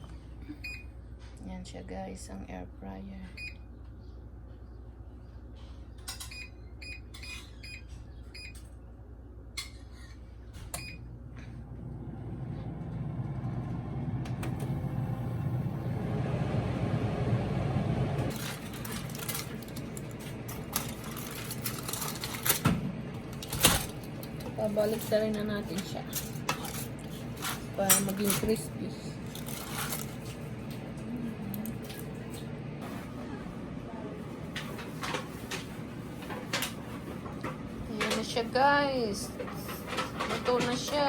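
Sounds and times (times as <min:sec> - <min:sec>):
air fryer fan humming: 0:00.0 - 0:41.0
clicks and clatters: 0:18.3 - 0:30.8.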